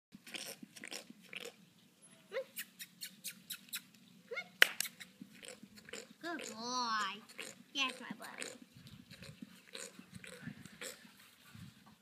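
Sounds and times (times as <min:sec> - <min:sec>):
horse lips smacking and flapping: 0:07.3 - 0:11.2.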